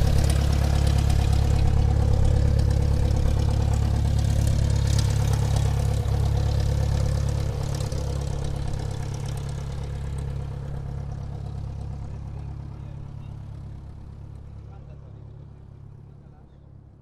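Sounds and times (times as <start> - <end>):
airplane engines taxiing: 0.0 - 10.3.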